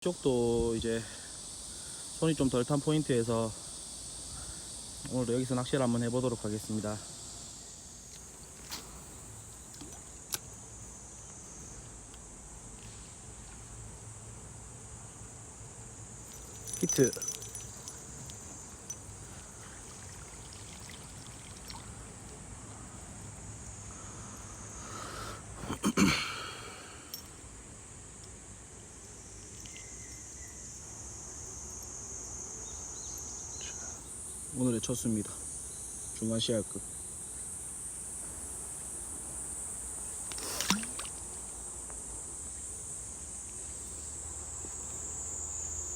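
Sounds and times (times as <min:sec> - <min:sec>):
faint outdoor background noise: 0:00.0 - 0:45.9
insects droning: 0:00.0 - 0:45.9
high-pitched insect drone: 0:16.0 - 0:21.2, 0:29.2 - 0:38.8.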